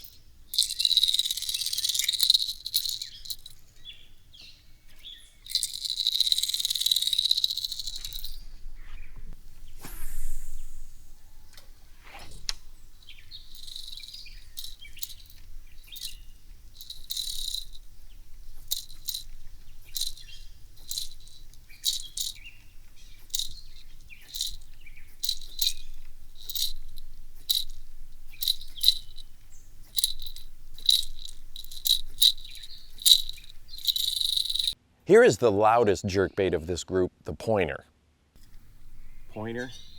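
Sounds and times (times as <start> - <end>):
lure rattles clacking underwater: 0.0 - 4.0, 5.4 - 8.6, 12.5 - 34.8, 38.4 - 39.9.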